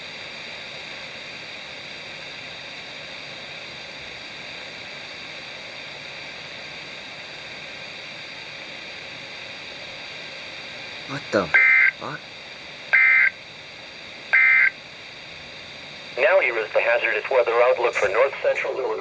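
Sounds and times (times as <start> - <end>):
radio static hiss: 10.1 - 13.4, 14.2 - 19.0.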